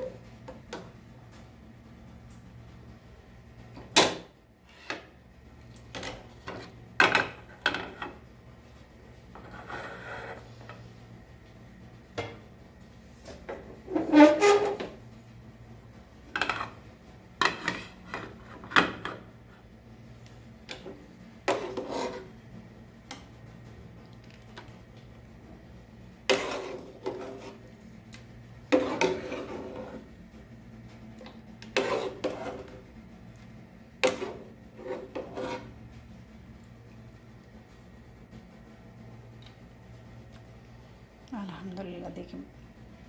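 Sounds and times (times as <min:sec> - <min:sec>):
low steady hum: 0:00.0 - 0:43.0
spoon scraping cooking pot: 0:09.3 - 0:10.8, 0:21.4 - 0:22.4, 0:26.3 - 0:27.6, 0:28.7 - 0:30.1, 0:31.6 - 0:32.8, 0:34.0 - 0:35.8.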